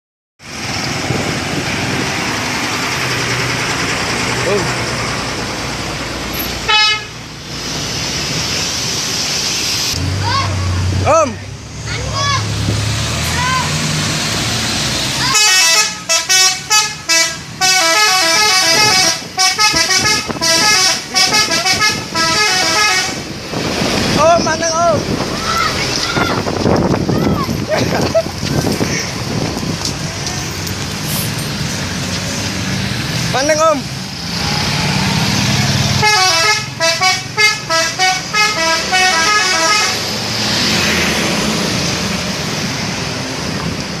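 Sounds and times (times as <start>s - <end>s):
bus engine running: 0.4s - 44.0s
road noise: 0.4s - 44.0s
bus horn melody: 6.6s - 7.2s, 15.3s - 23.3s, 36.0s - 40.1s.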